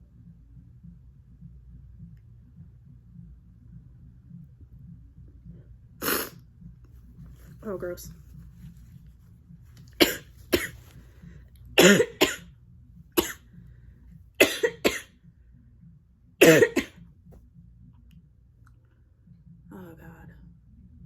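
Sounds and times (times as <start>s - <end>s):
person sneezing: 6.0s - 6.4s, 11.8s - 12.4s, 16.4s - 16.9s
person coughing: 10.0s - 10.9s, 11.8s - 12.5s, 13.2s - 13.4s, 14.4s - 15.1s, 16.4s - 17.0s.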